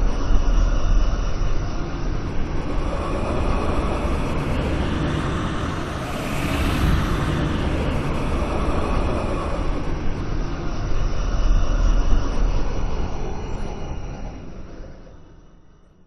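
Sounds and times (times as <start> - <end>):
low rumble: 0.0 - 14.2
airy sci-fi whoosh: 2.5 - 10.8.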